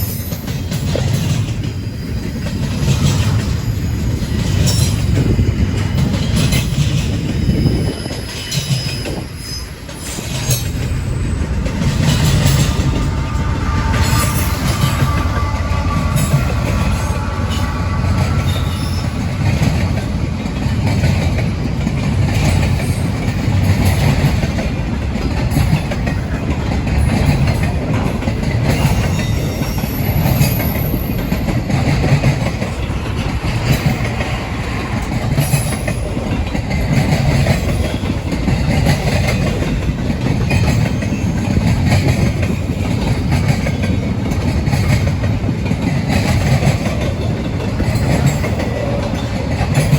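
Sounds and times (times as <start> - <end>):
high wheel squeal: 0.0 - 20.1, 28.8 - 32.1
train wheels clacking on rails: 0.0 - 49.9.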